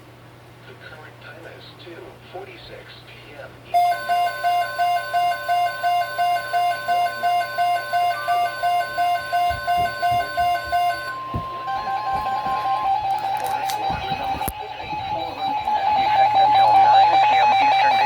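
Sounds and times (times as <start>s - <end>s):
steady warning alert tone: 3.8s - 13.1s
radio alarm beeping: 3.8s - 14.5s, 15.1s - 18.0s.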